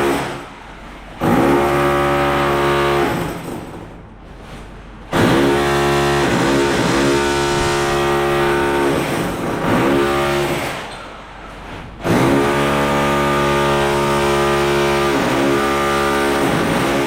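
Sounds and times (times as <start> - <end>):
power tool motor whining: 5.2 - 10.9.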